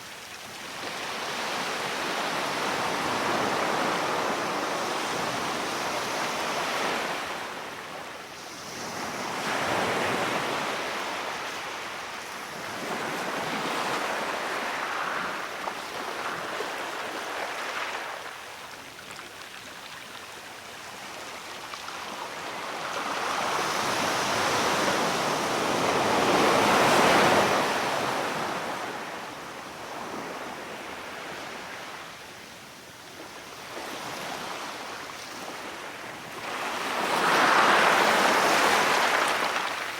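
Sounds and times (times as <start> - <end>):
sea waves washing onto shore: 35.7 - 39.9.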